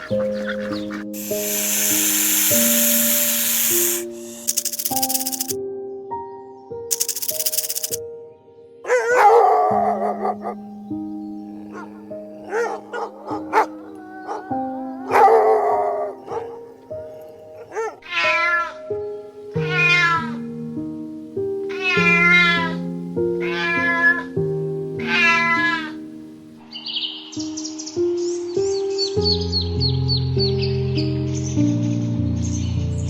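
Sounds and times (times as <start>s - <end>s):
background music with simple melody: 0.0s - 33.0s
cat meowing: 11.6s - 15.3s, 17.7s - 18.8s, 19.6s - 20.4s, 21.7s - 22.8s, 23.4s - 24.3s, 25.0s - 26.0s.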